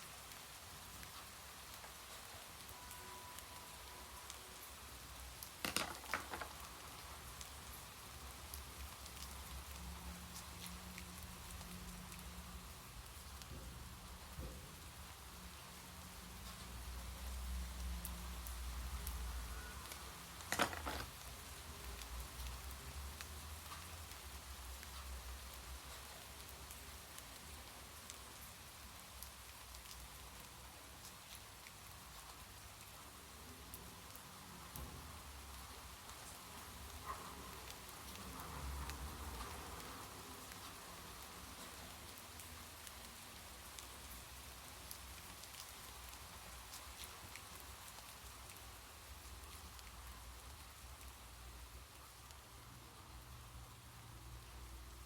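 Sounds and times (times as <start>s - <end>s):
steady rain: 0.0s - 55.0s
raindrops ticking: 33.7s - 53.8s.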